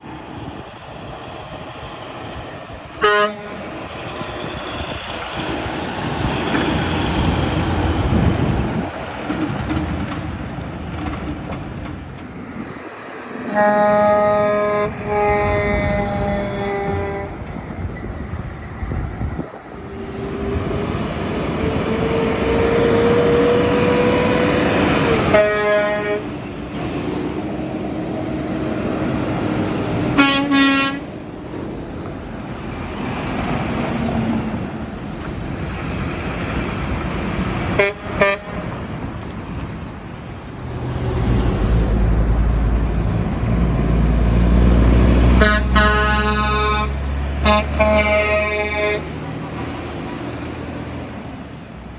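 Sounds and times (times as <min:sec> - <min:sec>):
trucks passing with road roar: 0:00.0 - 0:51.9
truck horn blasts: 0:03.0 - 0:03.9, 0:13.5 - 0:17.5, 0:25.2 - 0:26.4, 0:30.2 - 0:31.2, 0:37.8 - 0:38.8, 0:45.3 - 0:49.2.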